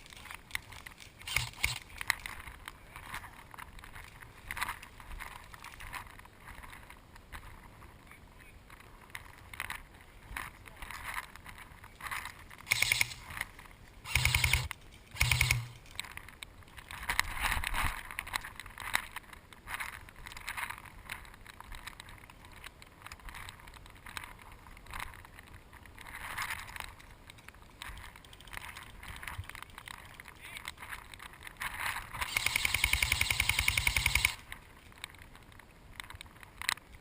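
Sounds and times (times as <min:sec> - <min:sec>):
noise of movement: 0:00.0 - 0:37.0
automatic airsoft gun fire: 0:01.2 - 0:01.8, 0:12.7 - 0:13.3, 0:14.1 - 0:15.8, 0:32.2 - 0:34.4.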